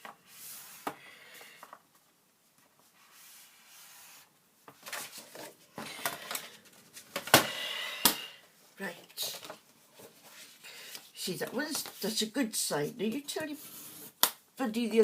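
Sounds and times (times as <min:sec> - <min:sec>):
rubbing and scraping on cardstock: 0:00.2 - 0:00.9, 0:02.8 - 0:04.3, 0:13.4 - 0:14.2.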